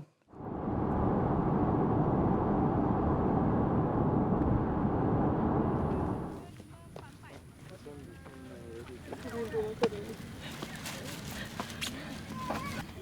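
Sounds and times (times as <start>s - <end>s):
low rumbling noise: 0.3s - 6.4s.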